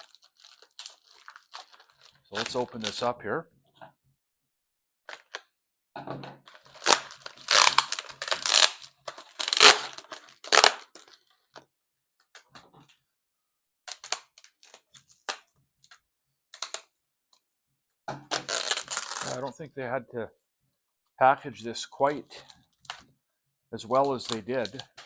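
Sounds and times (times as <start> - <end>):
bubble wrap crinkling and ripping: 0.0 - 3.1, 6.5 - 11.6, 13.9 - 15.5, 18.3 - 19.6, 24.0 - 25.0.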